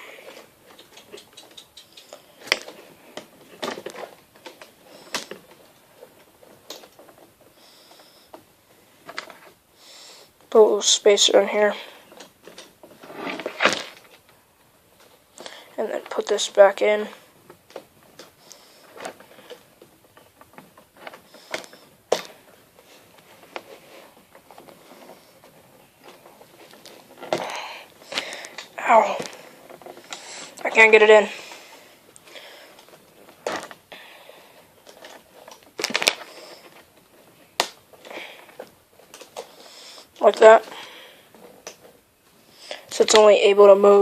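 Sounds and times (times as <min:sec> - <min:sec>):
plastic parts snapping: 0:34.9 - 0:36.3
plastic parts clicking: 0:37.6 - 0:39.6.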